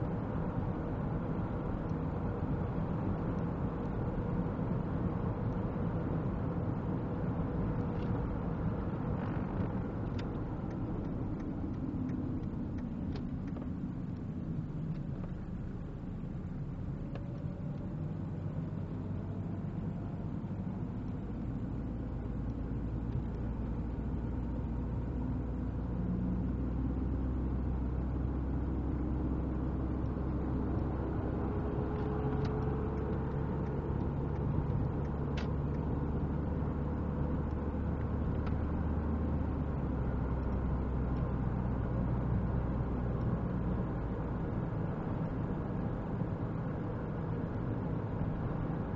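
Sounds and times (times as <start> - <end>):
car engine rumbling: 0.0 - 48.9
faint clicks: 31.8 - 38.6.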